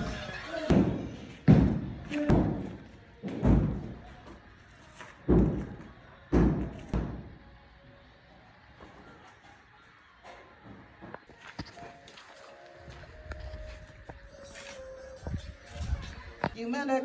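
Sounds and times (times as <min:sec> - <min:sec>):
heavy thuds: 0:00.7 - 0:04.4, 0:05.0 - 0:07.4.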